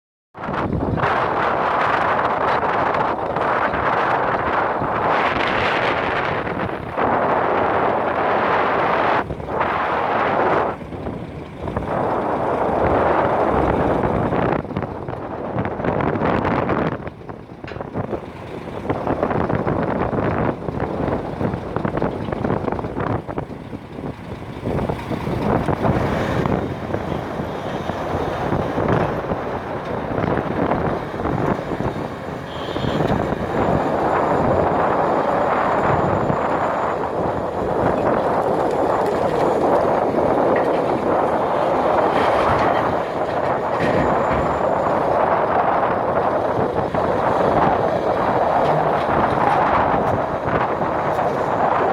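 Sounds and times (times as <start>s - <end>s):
excavator diesel engine under load: 0.4s - 51.9s
knocks and clatter: 16.9s - 23.4s, 24.6s - 51.9s.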